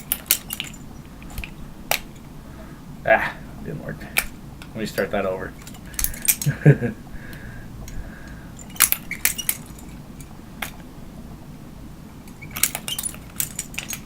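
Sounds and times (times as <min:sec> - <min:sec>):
butterfly knife handles clicking: 0:05.0 - 0:06.5.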